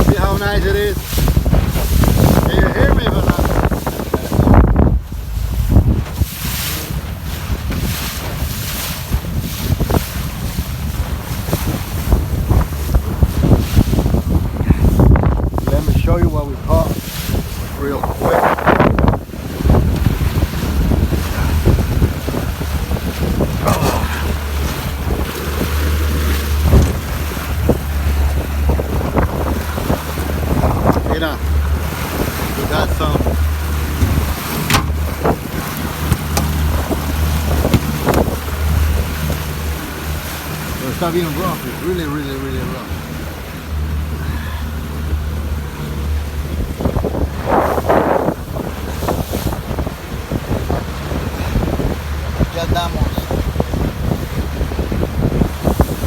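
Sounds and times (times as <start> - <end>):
low rumble: 0.0 - 8.5
rough water washing: 0.0 - 56.0
wind rumbling on microphone: 0.0 - 56.0
water splash: 16.7 - 44.0
sharp knocks: 33.9 - 38.4.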